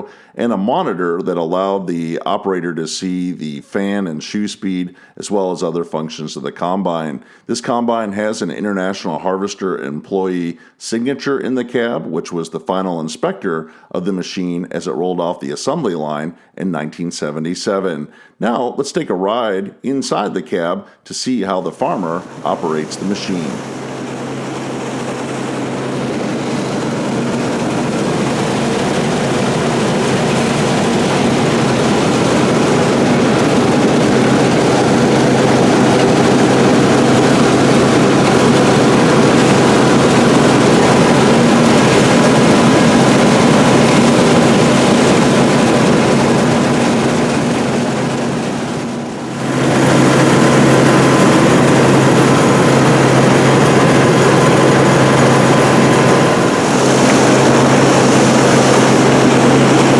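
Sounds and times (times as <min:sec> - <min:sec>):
combine engine and threshing drone: 0:22.0 - 0:59.9
constant low hum: 0:22.1 - 0:59.9.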